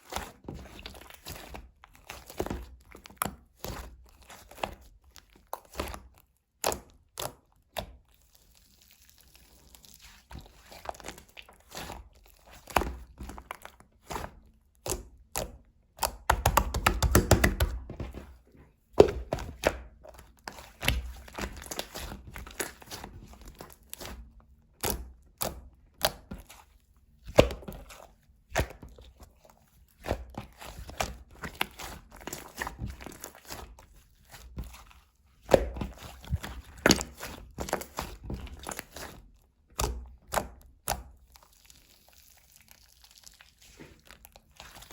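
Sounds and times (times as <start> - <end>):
slime squishing and popping: 14.8 - 18.1, 19.0 - 24.2, 24.8 - 44.9.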